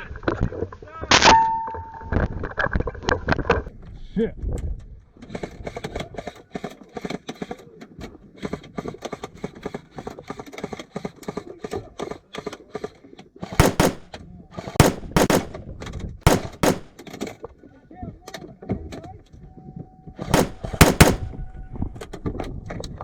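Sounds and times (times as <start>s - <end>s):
airsoft guns firing: 13.6s - 14.2s, 14.8s - 15.7s, 16.3s - 17.0s, 20.4s - 21.5s.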